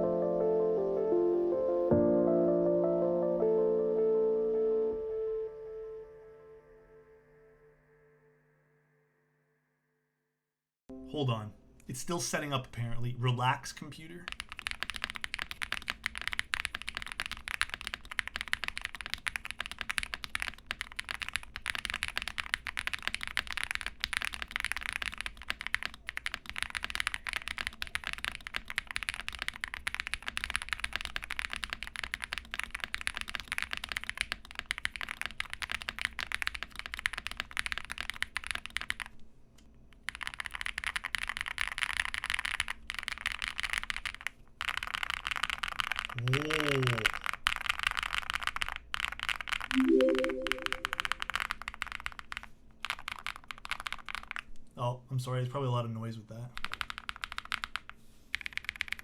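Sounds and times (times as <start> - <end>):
fast mechanical keyboard typing: 14.1 - 39.2, 40.0 - 54.5, 56.5 - 59.0.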